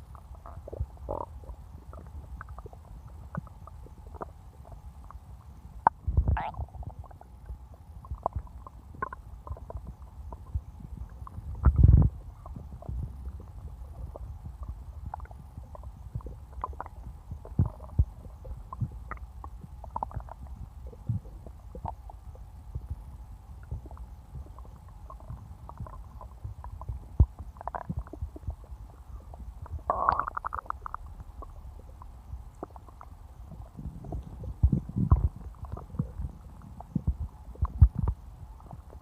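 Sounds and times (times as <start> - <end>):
stomach gurgling and rumbling: 0.0 - 39.0.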